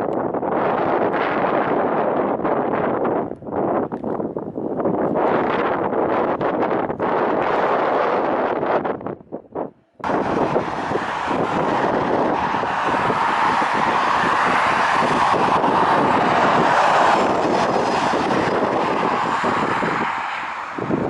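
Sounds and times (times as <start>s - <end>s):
wind buffeting microphone: 0.0s - 21.0s
jet engines roaring: 10.0s - 21.0s.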